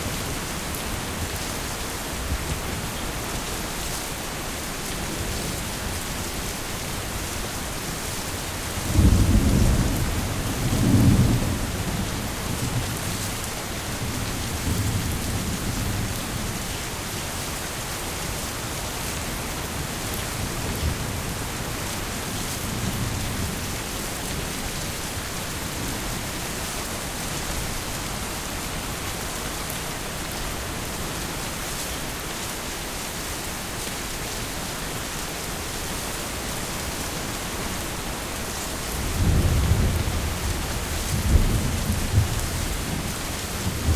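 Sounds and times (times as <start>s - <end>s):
heavy rain falling: 0.0s - 43.9s
thunder rumbling: 5.0s - 16.7s, 36.6s - 43.9s.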